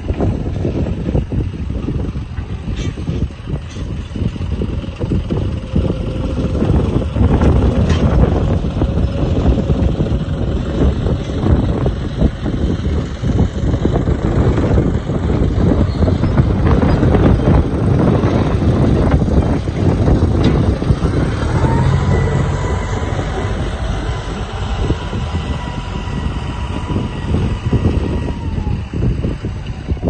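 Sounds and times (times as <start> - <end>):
excavator diesel engine: 0.3 - 30.0
steady high whine: 4.1 - 30.0
clanking and knocking: 15.7 - 28.4.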